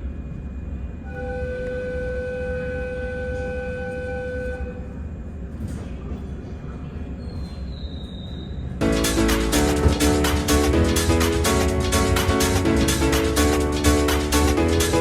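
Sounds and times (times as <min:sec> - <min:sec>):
train rumbling: 0:00.0 - 0:15.0
steady pitched tone: 0:08.8 - 0:15.0.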